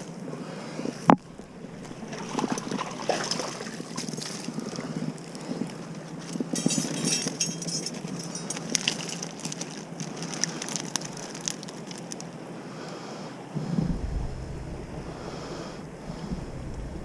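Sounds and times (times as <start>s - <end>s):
underwater noise: 0.0s - 7.0s
crackling clicks underwater: 8.0s - 12.3s.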